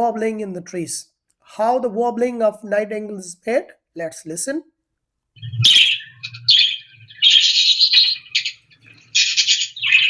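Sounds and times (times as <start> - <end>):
nightingale singing: 5.4 - 10.0.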